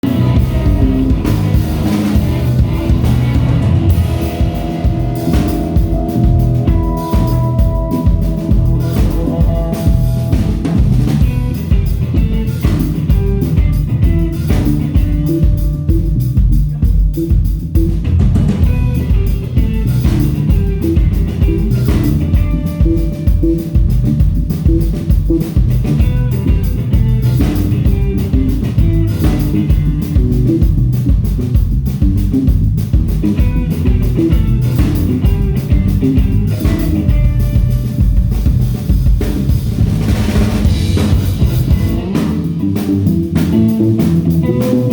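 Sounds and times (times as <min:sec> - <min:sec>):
guitar playing: 0:00.0 - 0:31.4, 0:33.0 - 0:39.0, 0:40.6 - 0:44.9
drum kit beat: 0:00.0 - 0:44.9.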